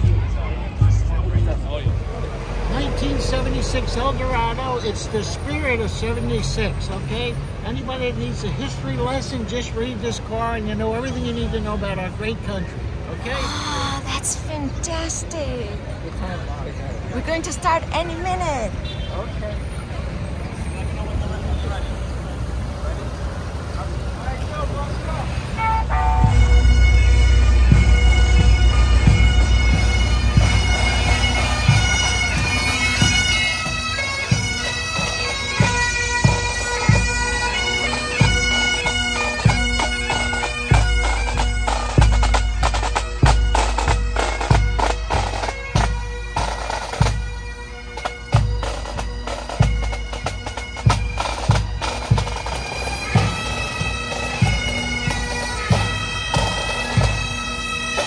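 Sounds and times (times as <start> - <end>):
drums beating: 0.0 - 6.6, 25.6 - 58.0
bagpipes playing a tune: 0.0 - 15.4, 25.2 - 58.0.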